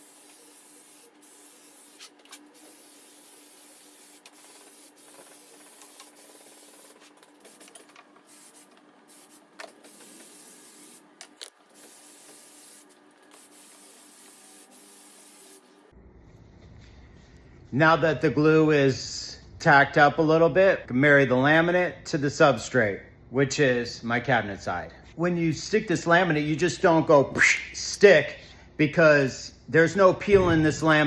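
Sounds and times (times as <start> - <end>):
adhesive spray hissing: 0.0 - 7.6, 8.3 - 11.0, 11.7 - 15.7.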